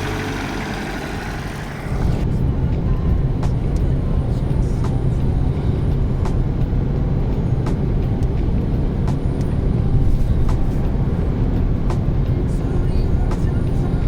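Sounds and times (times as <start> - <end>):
vehicle engine and road rumble: 0.0 - 14.0.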